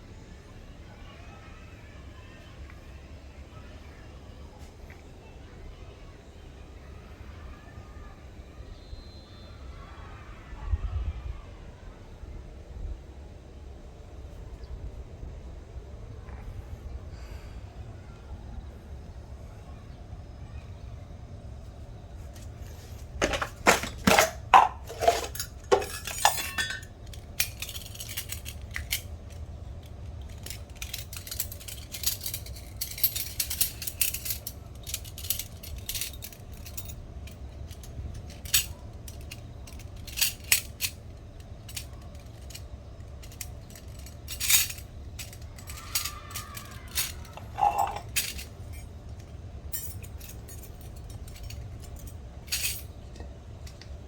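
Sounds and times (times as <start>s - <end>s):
steady low hum: 12.2s - 54.0s
cutlery clinking: 23.2s - 28.1s, 46.0s - 48.4s.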